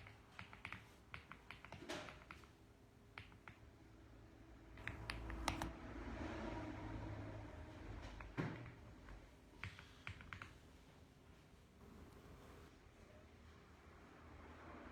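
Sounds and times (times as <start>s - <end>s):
mechanical keyboard typing: 0.0s - 2.5s, 4.8s - 5.7s, 9.6s - 10.6s.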